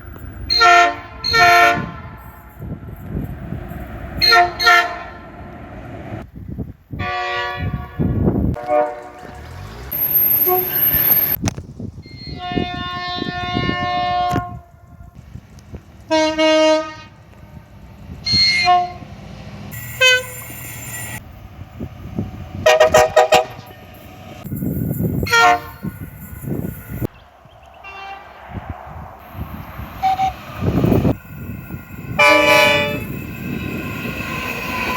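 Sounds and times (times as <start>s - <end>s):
train rumbling past: 0.0s - 34.9s
train horn: 0.5s - 2.4s, 4.2s - 5.3s, 7.0s - 9.7s, 12.1s - 15.1s, 16.1s - 19.1s, 19.8s - 20.4s, 22.6s - 23.8s, 25.2s - 25.9s, 27.8s - 28.6s, 30.0s - 34.0s
wheels clattering: 8.6s - 11.4s.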